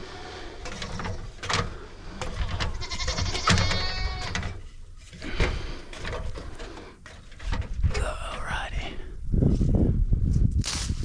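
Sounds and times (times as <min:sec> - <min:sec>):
animal bleating: 0:02.2 - 0:04.6.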